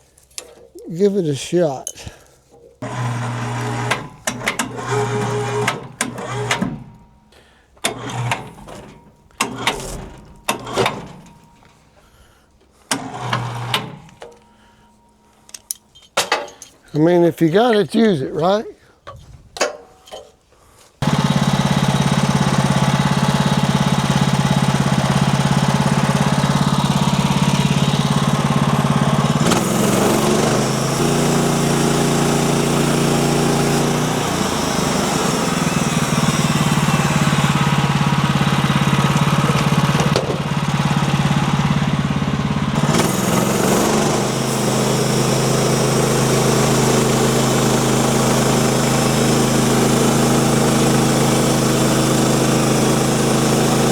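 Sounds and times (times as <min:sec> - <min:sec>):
engine running: 0:02.8 - 0:11.8, 0:21.0 - 0:53.9.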